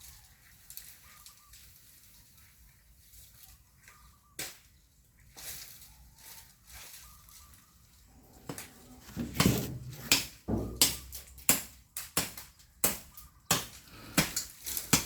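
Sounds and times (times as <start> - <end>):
blade chopping bamboo: 9.2 - 15.0.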